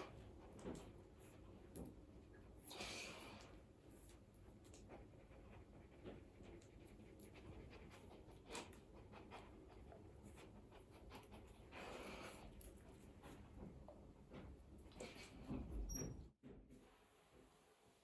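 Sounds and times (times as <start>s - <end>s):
dog breathing softly: 4.9s - 13.7s.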